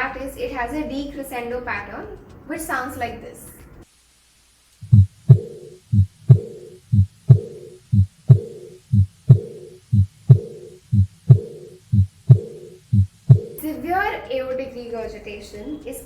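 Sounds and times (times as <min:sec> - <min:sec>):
soft heart murmur: 0:04.8 - 0:13.6
heartbeat lub-dub: 0:04.8 - 0:13.7.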